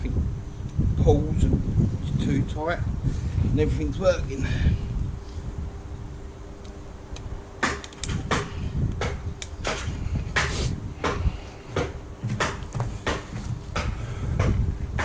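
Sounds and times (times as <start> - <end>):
faint steady hum: 0.0 - 15.0
knocks and bangs: 7.6 - 15.0.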